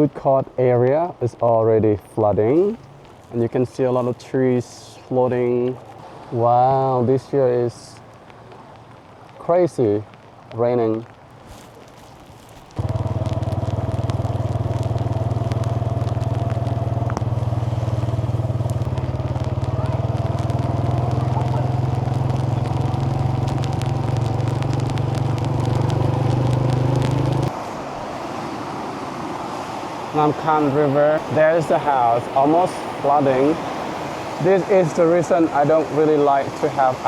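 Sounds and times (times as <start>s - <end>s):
vehicle engine running: 12.8s - 27.5s.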